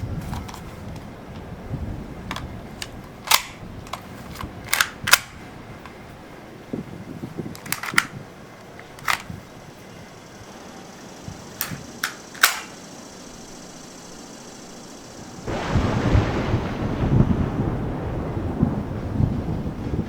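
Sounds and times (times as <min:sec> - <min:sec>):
low background hiss: 0:00.0 - 0:19.8
sharp clicks and snaps: 0:02.3 - 0:06.0, 0:07.5 - 0:08.2, 0:08.8 - 0:09.3, 0:11.6 - 0:12.8.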